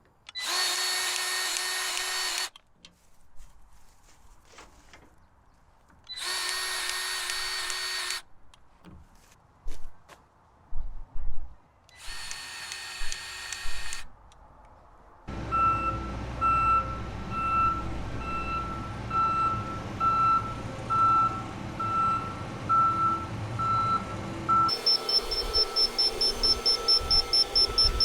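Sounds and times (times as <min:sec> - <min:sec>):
heavy diesel engine running: 0:15.3 - 0:28.0
reversing alarm beeping: 0:15.5 - 0:28.0
whir with steady high tone: 0:23.6 - 0:28.0.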